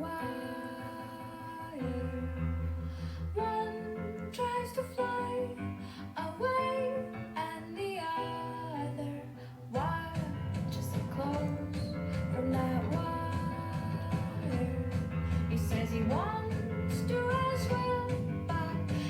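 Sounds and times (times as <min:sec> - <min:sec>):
singing voice: 0:00.0 - 0:19.0
instrumental backing: 0:09.8 - 0:19.0.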